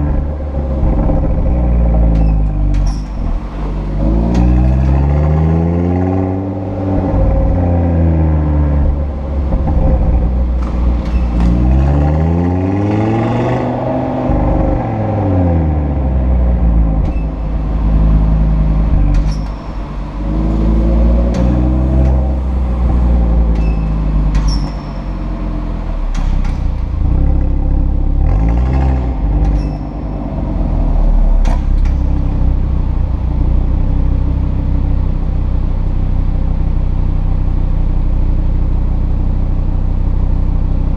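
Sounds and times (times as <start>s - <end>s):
exhaust flaps squeaking: 0.0s - 5.4s, 6.0s - 14.9s, 16.9s - 33.1s
car engine revving: 0.0s - 40.9s.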